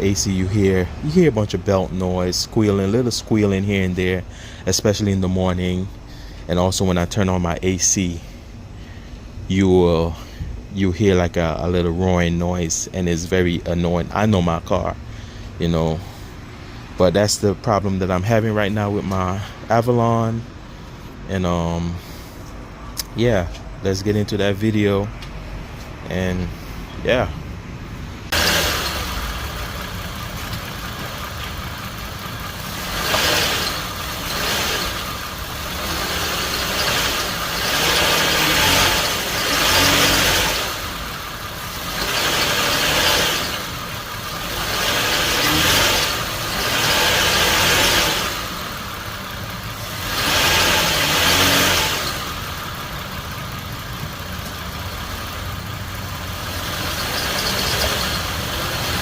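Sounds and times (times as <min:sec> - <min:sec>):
car engine revving: 0:28.3 - 0:59.0.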